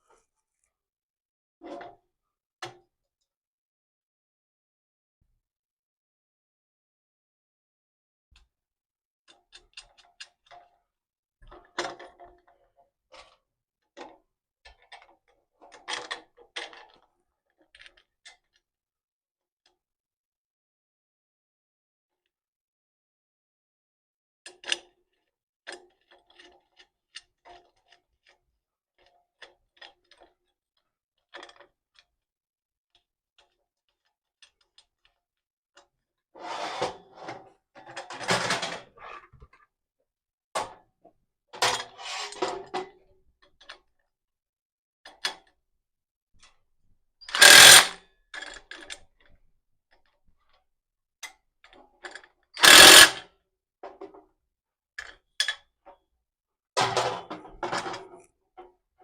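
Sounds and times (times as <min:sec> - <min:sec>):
loud tool bursts: 0:47.3 - 0:48.0, 0:52.6 - 0:53.2
tool clicks and knocks: 0:47.3 - 0:49.0, 0:52.6 - 0:53.2.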